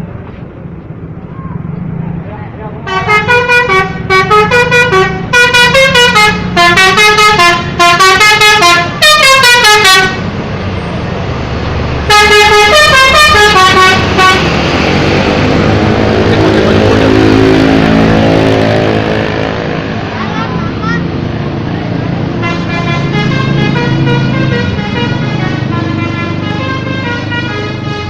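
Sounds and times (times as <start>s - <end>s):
road noise: 0.0s - 28.0s
vehicle engine: 0.0s - 28.0s
multi-tone bus air horn: 2.8s - 10.3s, 12.1s - 14.6s, 22.4s - 28.0s.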